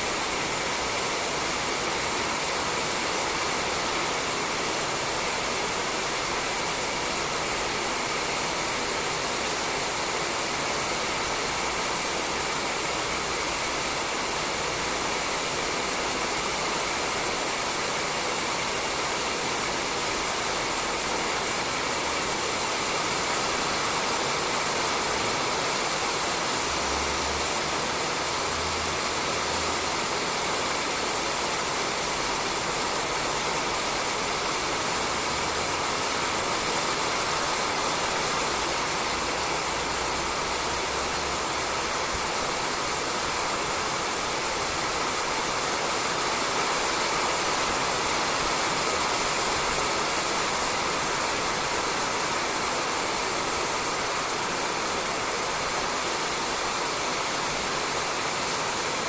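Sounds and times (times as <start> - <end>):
rain on a roof: 0.0 - 59.0.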